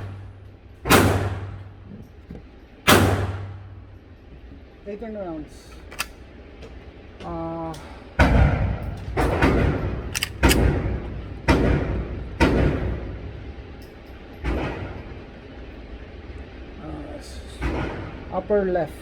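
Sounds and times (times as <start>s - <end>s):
pistol shots echoing: 0.9s - 1.6s, 9.3s - 13.0s.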